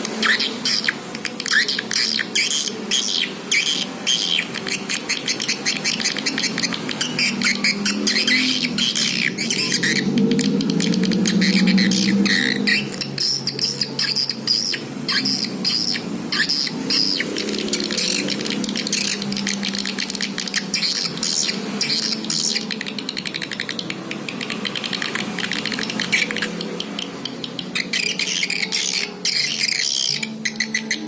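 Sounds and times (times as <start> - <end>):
swiftlet twittering chirps: 0.2 - 31.0.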